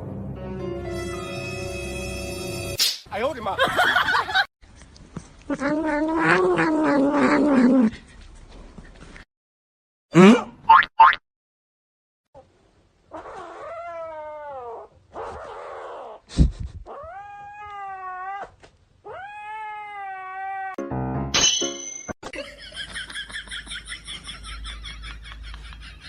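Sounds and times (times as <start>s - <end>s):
cat meowing: 16.9s - 20.8s.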